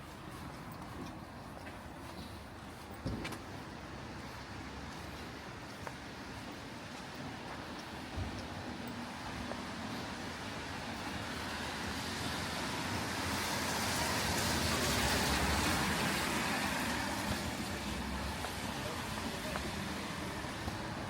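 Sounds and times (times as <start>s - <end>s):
car tyres hissing on wet street: 6.1s - 21.0s.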